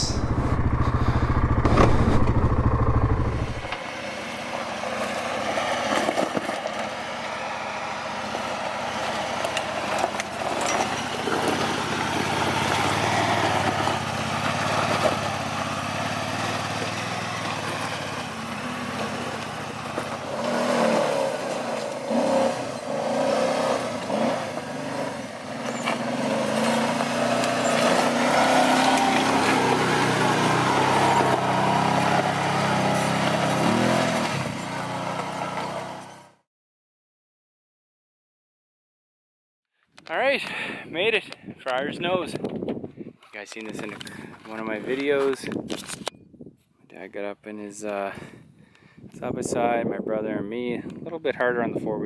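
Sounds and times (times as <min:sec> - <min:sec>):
atv engine running under load: 0:00.0 - 0:05.9, 0:06.8 - 0:36.3.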